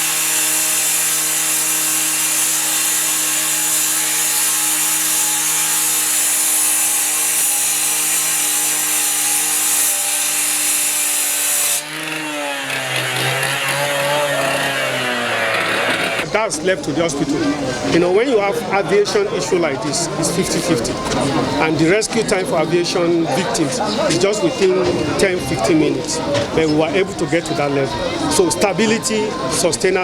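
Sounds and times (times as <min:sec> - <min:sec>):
power tool cutting: 0:00.0 - 0:16.3.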